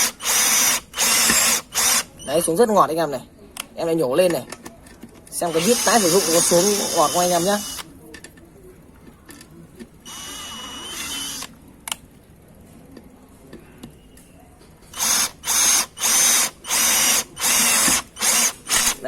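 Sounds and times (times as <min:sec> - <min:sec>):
cordless drill driving a screw: 0:00.0 - 0:02.2, 0:05.5 - 0:07.9, 0:10.1 - 0:11.5, 0:15.0 - 0:19.0.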